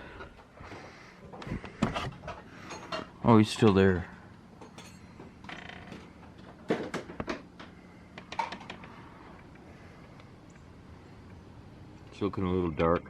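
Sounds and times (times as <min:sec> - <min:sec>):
short creak: 0:05.5 - 0:06.1.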